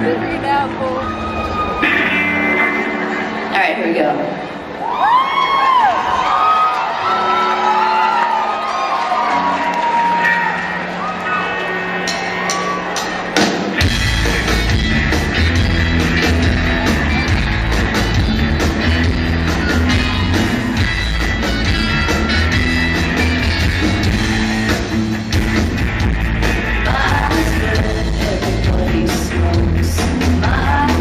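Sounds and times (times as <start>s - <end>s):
rock band playing live: 0.0s - 4.8s, 6.0s - 31.0s
heavy bass and drums: 13.3s - 31.0s.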